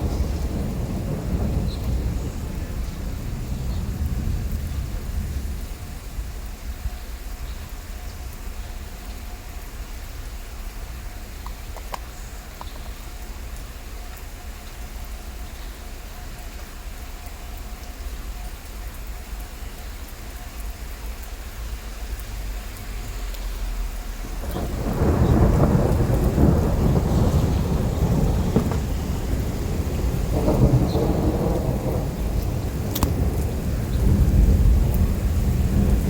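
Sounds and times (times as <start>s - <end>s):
thunder rumble: 0.0s - 8.0s, 23.9s - 36.0s
rain falling: 0.0s - 36.0s.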